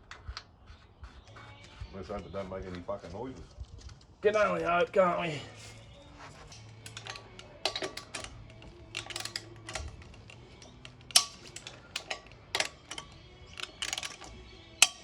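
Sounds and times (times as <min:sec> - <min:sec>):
metallic clicks and clinks: 0:06.5 - 0:15.0.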